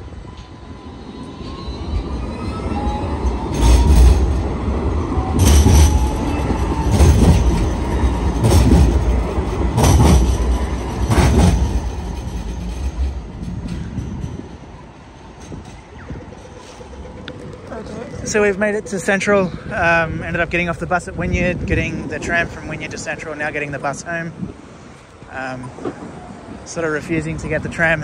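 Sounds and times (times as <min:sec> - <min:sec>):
wheels thudding over rail joints: 0:03.4 - 0:17.6.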